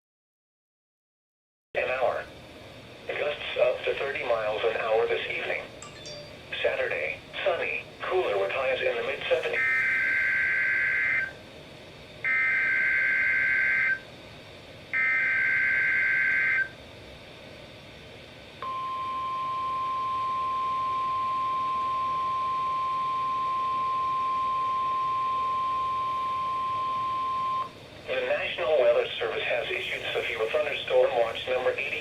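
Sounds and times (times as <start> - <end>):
steady warning alarm tone: 8.4 - 11.4, 12.2 - 14.1, 14.9 - 16.8, 18.6 - 27.8.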